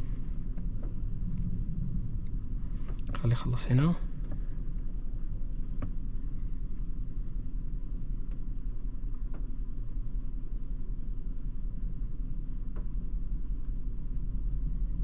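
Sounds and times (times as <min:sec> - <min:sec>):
faint clicks: 0:02.2 - 0:03.2, 0:13.6 - 0:13.8.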